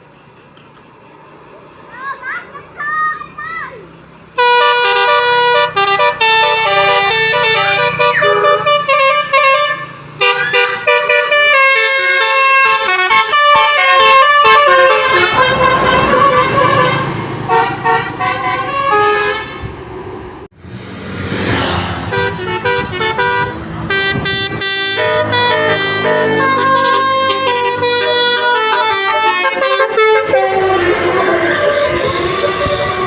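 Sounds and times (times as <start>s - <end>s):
rush of passing vehicle: 0.9s - 12.5s, 13.4s - 33.0s
vehicle musical horn melody: 4.4s - 19.8s, 22.0s - 33.0s.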